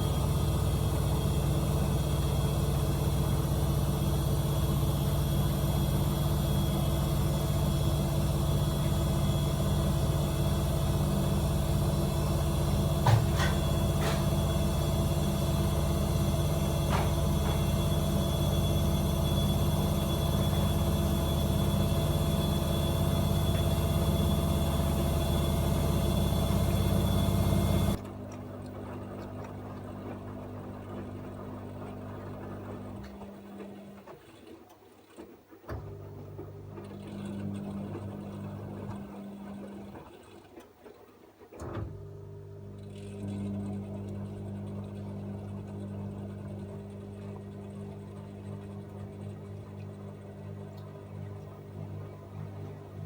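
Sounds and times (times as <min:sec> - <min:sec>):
washing machine drum turning: 0:00.0 - 0:31.1
washing machine hum with whine: 0:00.0 - 0:53.0.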